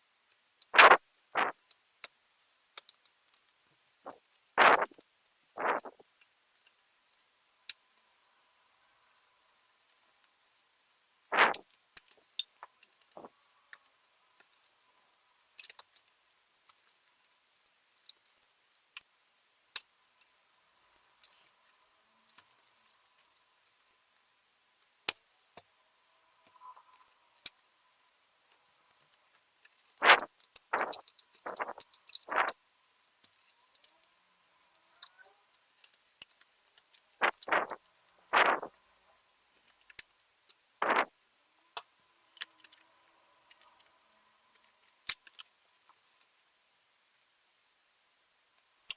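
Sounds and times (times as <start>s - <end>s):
small clicks and taps of laptop parts: 0.3s - 5.0s, 5.6s - 8.0s, 9.8s - 24.0s, 24.8s - 37.8s, 39.6s - 41.1s, 41.7s - 46.3s
tools clicking and scraping plastic: 15.6s - 17.4s, 28.5s - 34.1s, 44.5s - 46.0s.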